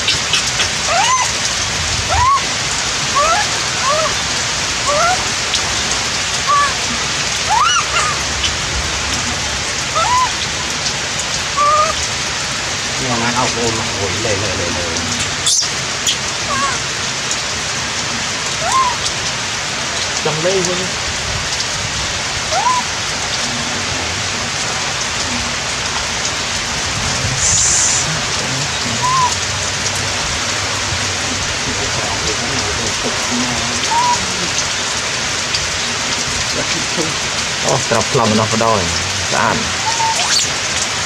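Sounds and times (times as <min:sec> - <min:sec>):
monkey squeaky calls: 0:00.0 - 0:08.6, 0:09.2 - 0:10.6, 0:11.5 - 0:12.1, 0:15.2 - 0:16.9, 0:18.6 - 0:19.2, 0:22.5 - 0:23.0, 0:28.8 - 0:29.5, 0:33.8 - 0:34.6, 0:39.7 - 0:40.6
steady rain falling: 0:00.0 - 0:41.0.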